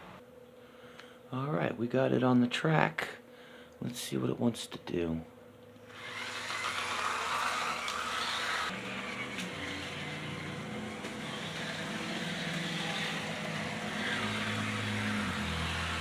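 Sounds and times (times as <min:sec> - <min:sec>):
model train motor whirring: 0:05.9 - 0:16.0
wheels rolling on rails: 0:05.9 - 0:16.0.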